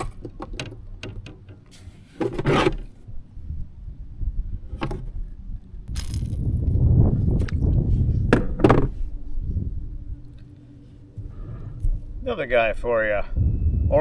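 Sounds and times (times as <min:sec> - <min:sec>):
low rumbling noise: 0:02.8 - 0:14.0.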